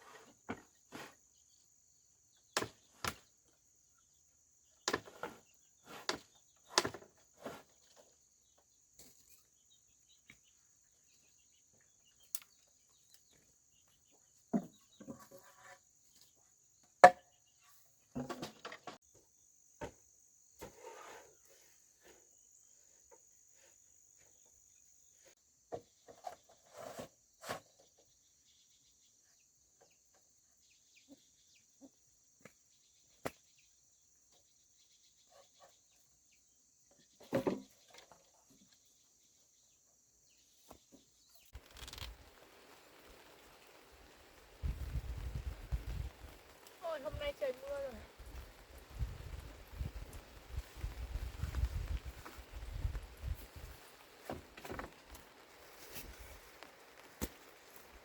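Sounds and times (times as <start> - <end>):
insects trilling: 41.6 - 58.0.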